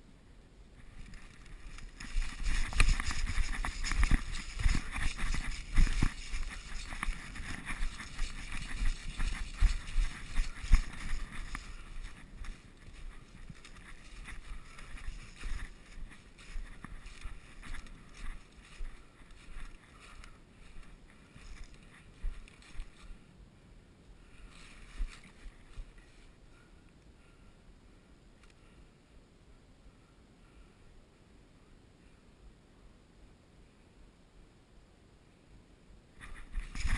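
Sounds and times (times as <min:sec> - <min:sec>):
rustling of brush and gear: 0:00.6 - 0:27.3, 0:36.1 - 0:36.9
footsteps through undergrowth: 0:00.8 - 0:23.3, 0:24.3 - 0:26.4, 0:36.2 - 0:36.9.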